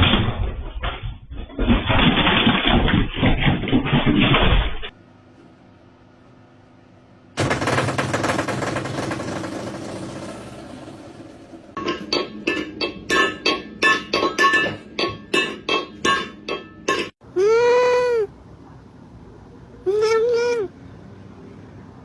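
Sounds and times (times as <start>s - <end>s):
cat meowing: 17.4s - 18.3s, 19.8s - 20.7s.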